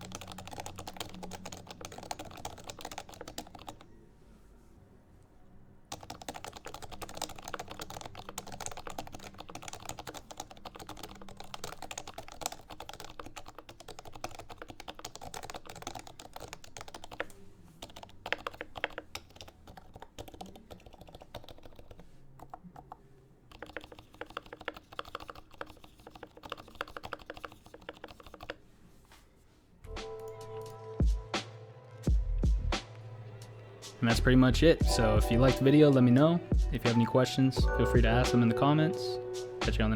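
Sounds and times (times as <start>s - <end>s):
background music: 0.0s - 3.8s, 29.8s - 39.9s
fast keyboard typing: 0.0s - 3.8s, 5.9s - 28.6s.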